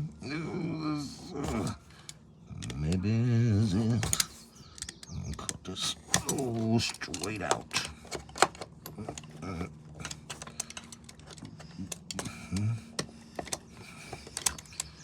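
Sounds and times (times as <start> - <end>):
faint low hum: 0.0 - 15.0
tool clicks and taps: 4.0 - 9.4, 10.0 - 15.0.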